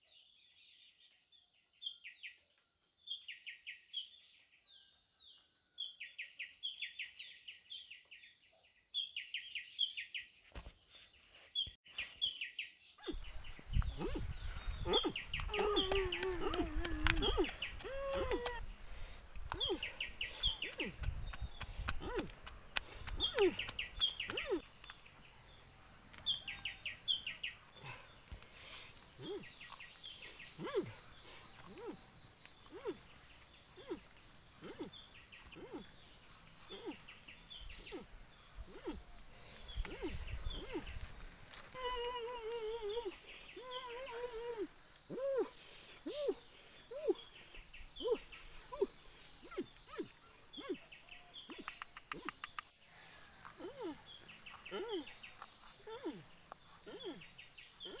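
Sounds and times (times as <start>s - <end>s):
short chirping calls: 45.1s - 52.8s.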